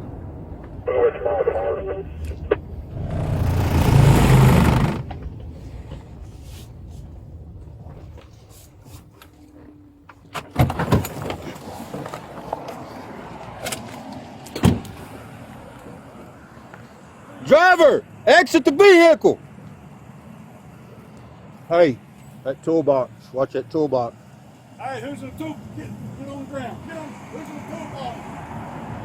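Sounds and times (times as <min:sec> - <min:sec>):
loud rush of noise: 0:00.0 - 0:07.0
low engine hum: 0:00.0 - 0:10.3.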